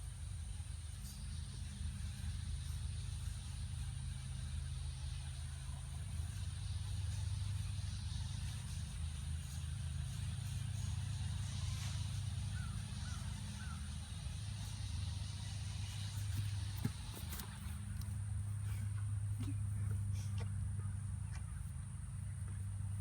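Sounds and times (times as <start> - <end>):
faint bird chirps: 11.0 - 14.3
muffled horse chest sounds: 15.8 - 23.0.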